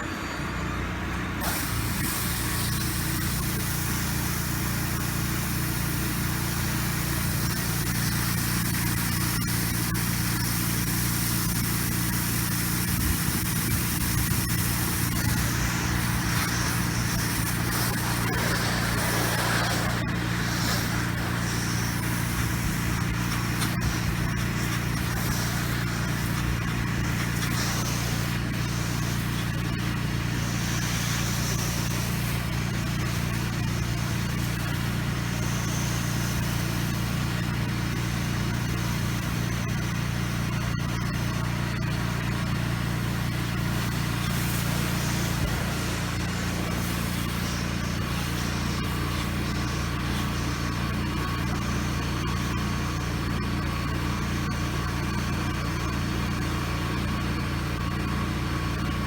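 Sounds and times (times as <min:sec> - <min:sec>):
pressure washer engine running: 0:00.0 - 0:59.0
water spray hissing: 0:01.4 - 0:37.5, 0:42.2 - 0:52.7.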